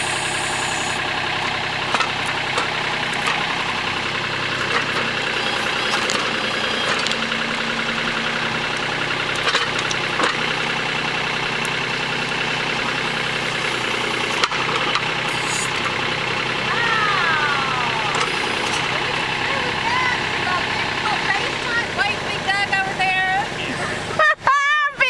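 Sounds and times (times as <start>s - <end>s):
steady whine: 0.0s - 24.2s
tractor diesel engine running: 0.0s - 25.0s
short clanks: 8.7s - 10.6s.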